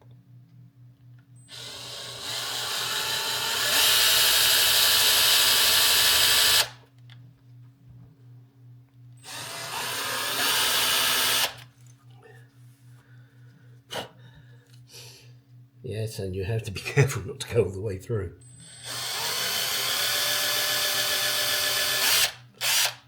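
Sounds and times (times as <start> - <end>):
power drill drilling: 1.5 - 6.8, 9.2 - 11.6, 18.6 - 23.0.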